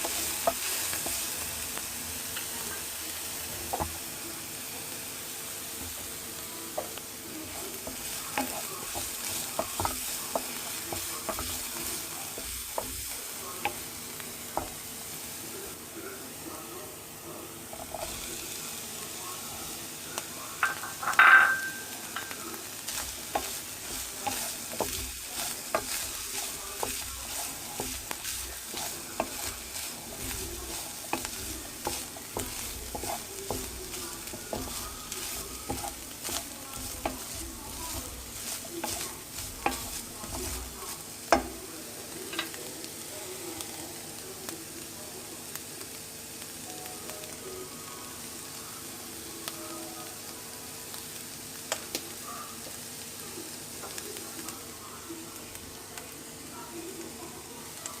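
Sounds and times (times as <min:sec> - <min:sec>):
utensil stirring and scraping pan: 0:00.0 - 0:04.2, 0:05.5 - 0:15.3, 0:17.6 - 0:20.0, 0:20.6 - 0:41.7
food sizzling in a frying pan: 0:00.0 - 0:58.0
utensil clinking against pan: 0:20.6 - 0:22.4.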